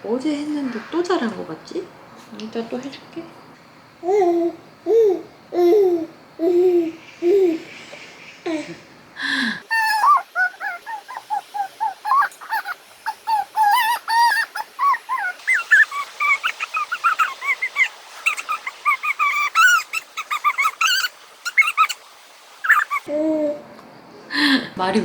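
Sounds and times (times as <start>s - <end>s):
dog whining: 9.6s - 22.0s, 22.6s - 23.1s.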